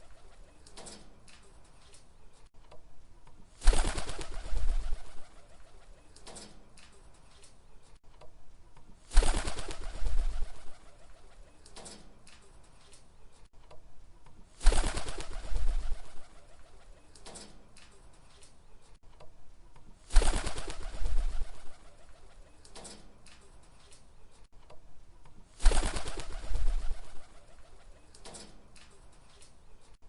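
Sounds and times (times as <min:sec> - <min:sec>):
pigeon wings flapping: 0:03.6 - 0:06.1, 0:09.1 - 0:11.7, 0:14.6 - 0:17.2, 0:20.0 - 0:22.5, 0:25.6 - 0:29.5.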